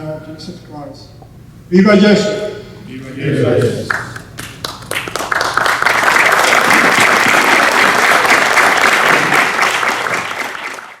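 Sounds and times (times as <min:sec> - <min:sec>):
audience applauding: 0:03.9 - 0:11.0.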